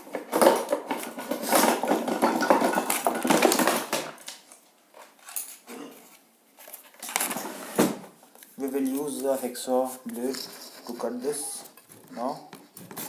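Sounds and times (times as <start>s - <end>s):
metal clattering and scraping: 0.0s - 4.0s
faint handling sounds: 4.4s - 13.0s.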